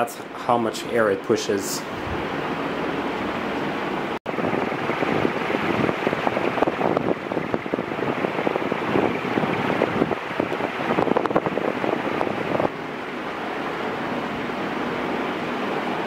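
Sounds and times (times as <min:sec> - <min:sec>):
air buffeting microphone: 0:00.0 - 0:16.0
ceiling fan rushing air: 0:00.0 - 0:16.0.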